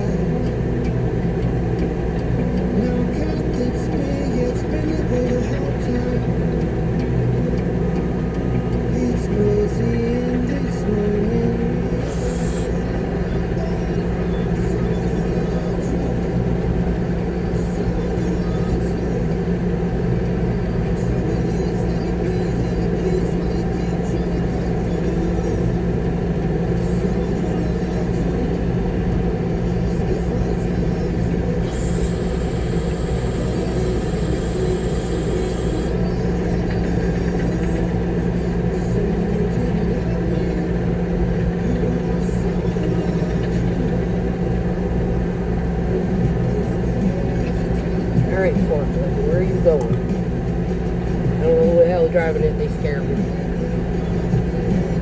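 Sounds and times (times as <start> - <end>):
diesel engine running: 0.0 - 55.0
hiss: 12.0 - 12.7, 31.7 - 35.9.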